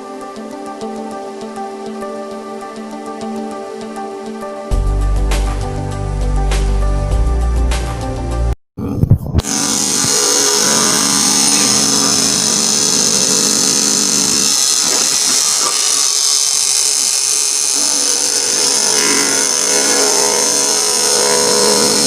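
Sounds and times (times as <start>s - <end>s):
electric cloth-cutting machine: 9.4s - 22.0s.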